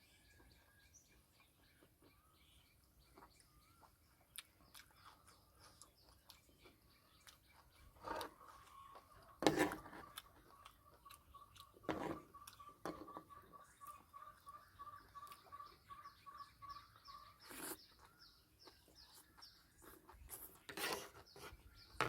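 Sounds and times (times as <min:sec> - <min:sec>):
chewing with wet mouth clicks: 0:02.8 - 0:09.3, 0:10.0 - 0:12.7, 0:13.8 - 0:15.8.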